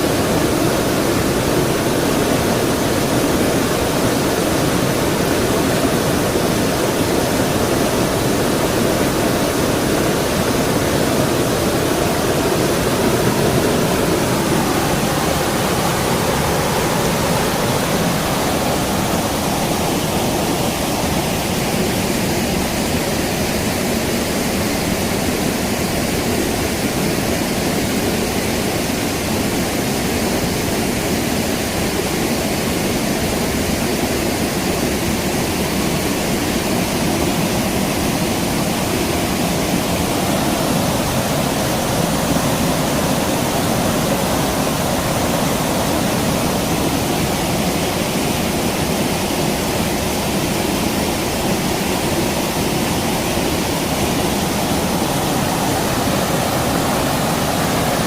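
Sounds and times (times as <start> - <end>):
creek water flowing: 0.0 - 58.0.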